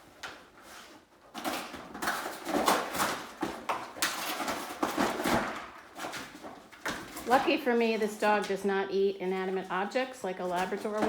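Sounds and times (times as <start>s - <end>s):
dog shredding cardboard: 0.0s - 7.4s.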